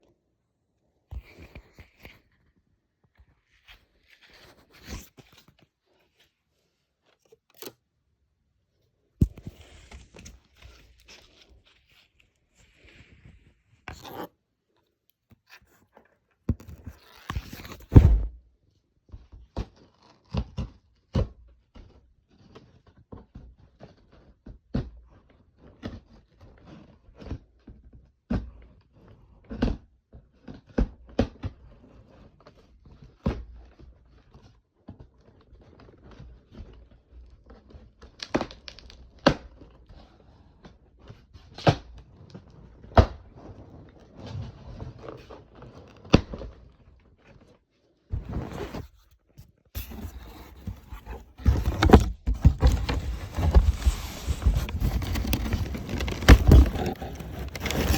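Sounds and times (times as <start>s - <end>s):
packaging tearing: 49.8s - 57.9s.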